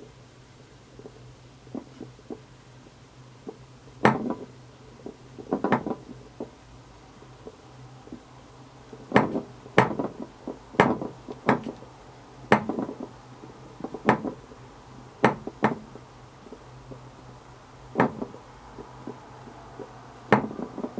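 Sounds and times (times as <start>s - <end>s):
ball clacking on hard surface: 20.3s - 20.9s.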